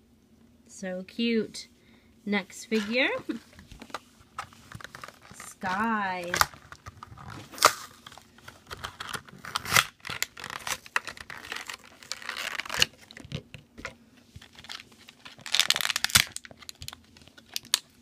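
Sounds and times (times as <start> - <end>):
packaging being torn and crinkled: 4.4 - 13.5, 14.4 - 18.0.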